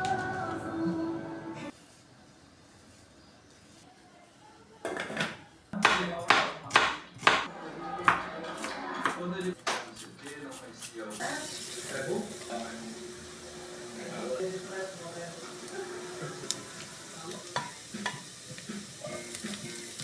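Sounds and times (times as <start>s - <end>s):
dishes and pots clattering: 17.5s - 18.3s.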